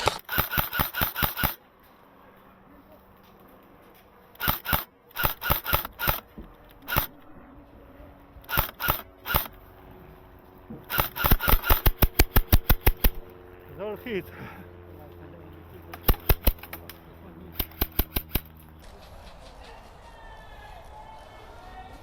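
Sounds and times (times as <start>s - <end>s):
airsoft guns firing: 0.0s - 1.6s, 4.4s - 7.2s, 8.5s - 9.6s, 10.9s - 13.3s, 15.9s - 16.8s, 17.5s - 18.6s.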